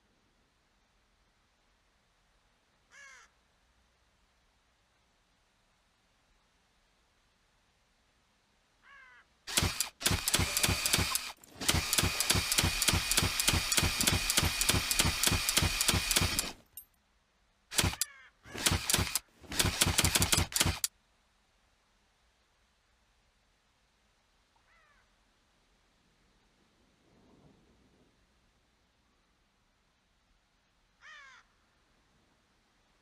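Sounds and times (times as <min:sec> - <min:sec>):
rapid mechanical clacks: 0:09.5 - 0:16.7, 0:17.7 - 0:20.9.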